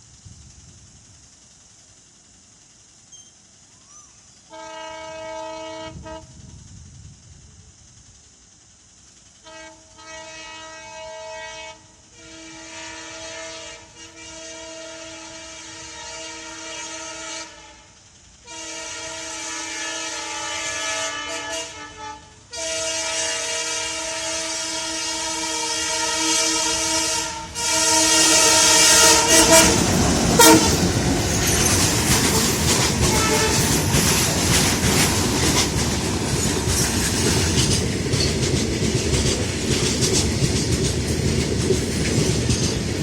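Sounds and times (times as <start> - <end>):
train running noise: 0.0 - 43.0
locomotive air horn blasts: 4.5 - 6.4, 9.4 - 30.9, 33.0 - 33.7.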